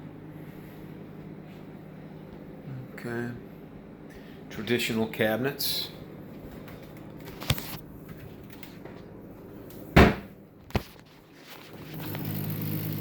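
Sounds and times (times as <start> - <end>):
cabinet door banging: 10.0 - 10.3
cabinet doors opening and shutting: 10.0 - 10.3.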